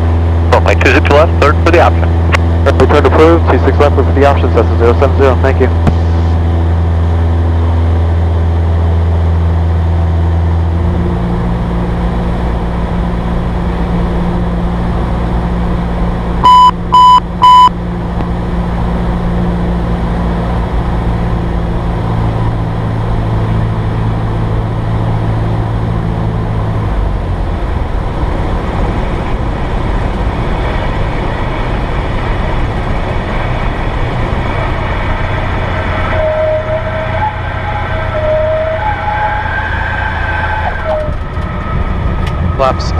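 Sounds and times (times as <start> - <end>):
propeller plane engine droning: 0.0 - 42.9
short electronic beeps: 16.4 - 17.8.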